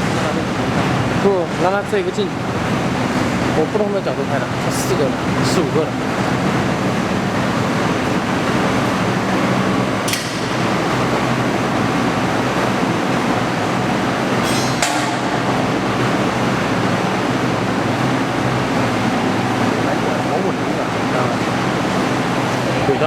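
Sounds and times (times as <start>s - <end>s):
industrial machinery hum: 0.0s - 23.0s
sharp metallic clank: 14.4s - 15.6s.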